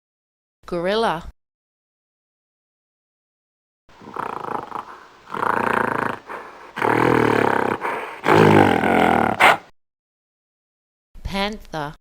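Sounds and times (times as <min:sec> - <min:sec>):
gorilla low rough calls: 0:04.0 - 0:09.6.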